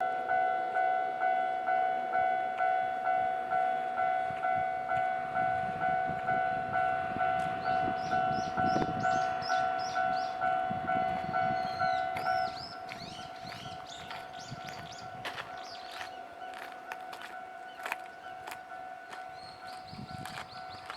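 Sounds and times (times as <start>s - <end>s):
level-crossing warning bell: 0.0s - 20.9s
birds chirping: 7.5s - 10.6s, 11.3s - 20.9s.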